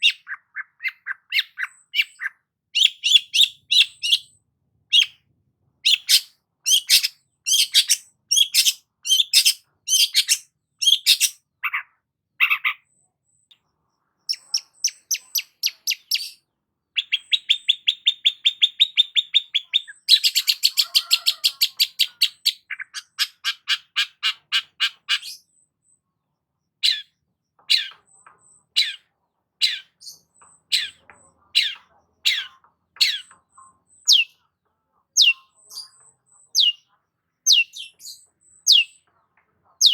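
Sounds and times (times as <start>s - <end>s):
fast rattling bird trill: 5.9s - 11.4s.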